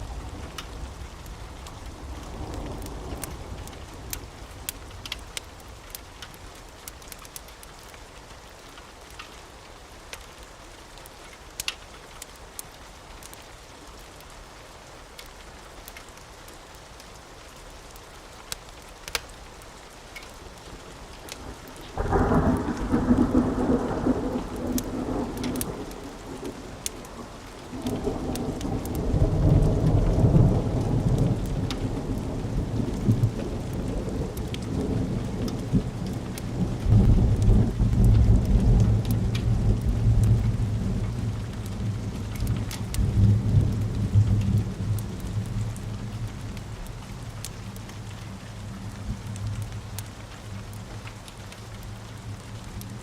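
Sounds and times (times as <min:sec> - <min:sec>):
thunder rumbling: 0:00.0 - 0:04.8, 0:21.4 - 0:47.3
steady rain: 0:00.0 - 0:53.0
wood fire crackling: 0:00.0 - 0:53.0.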